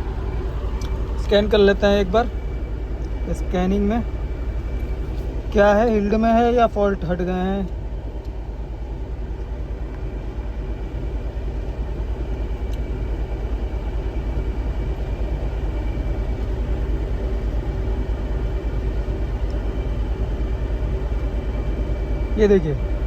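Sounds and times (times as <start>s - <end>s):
petrol engine idling: 0.0s - 23.0s.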